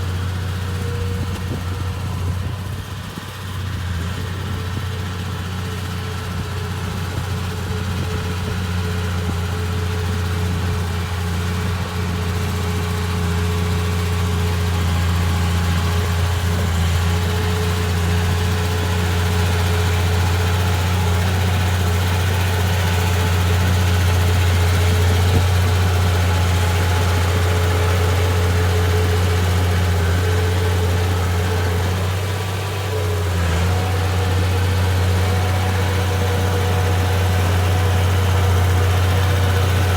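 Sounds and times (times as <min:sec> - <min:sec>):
bulldozer diesel engine running: 0:00.0 - 0:39.9.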